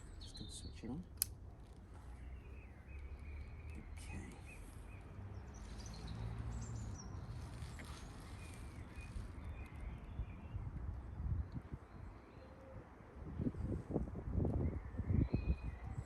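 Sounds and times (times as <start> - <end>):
birds chirping: 0.0 - 1.3, 2.0 - 12.8
wind buffeting microphone: 8.7 - 16.0.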